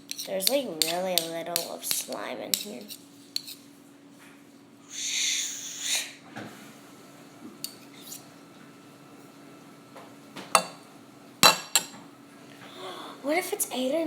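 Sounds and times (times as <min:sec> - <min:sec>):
utensils and dishes clinking: 0:10.5 - 0:10.8, 0:11.4 - 0:12.0.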